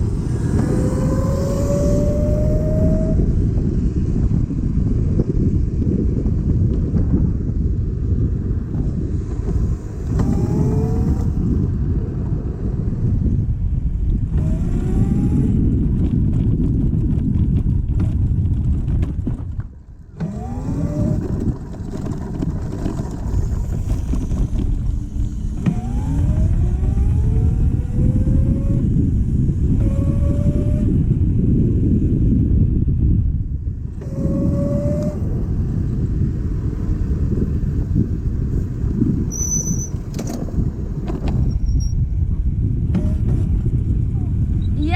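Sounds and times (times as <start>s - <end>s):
scooter motor accelerating: 0.0s - 4.3s, 8.9s - 17.6s, 20.1s - 32.4s, 33.7s - 40.1s
wind rumble on microphone: 0.0s - 44.9s.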